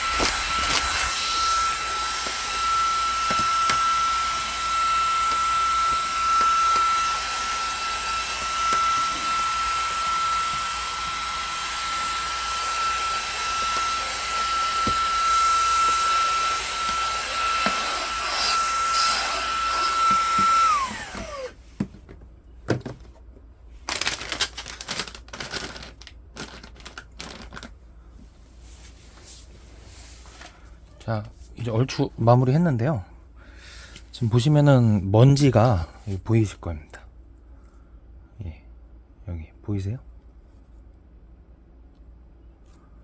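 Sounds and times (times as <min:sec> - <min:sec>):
cordless vacuum cleaner whine: 0:00.0 - 0:21.6.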